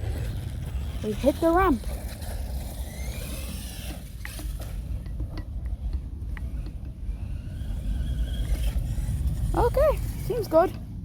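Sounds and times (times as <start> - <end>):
rc truck clicks and knocks: 1.9 - 9.2
rising motor whine: 6.4 - 10.2.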